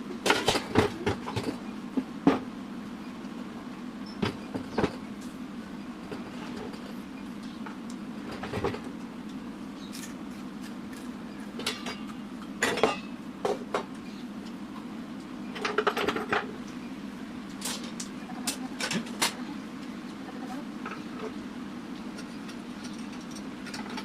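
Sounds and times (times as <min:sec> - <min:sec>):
coffee roaster humming: 0:00.0 - 0:24.0.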